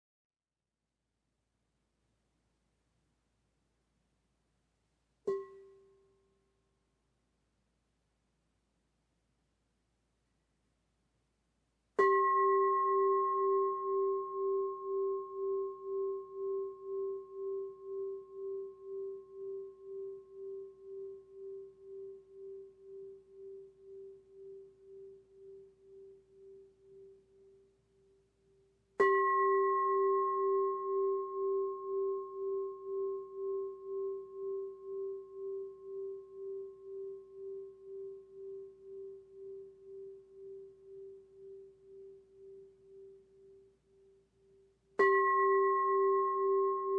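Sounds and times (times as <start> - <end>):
singing bowl strike: 5.3 - 6.0
singing bowl ringing: 12.0 - 28.2, 29.0 - 44.1, 45.0 - 46.9.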